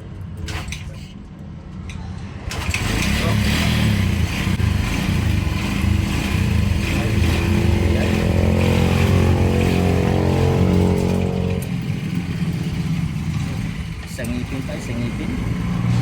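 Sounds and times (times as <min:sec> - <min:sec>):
engine running steadily: 0:00.0 - 0:16.0
pitched hum: 0:05.9 - 0:13.2.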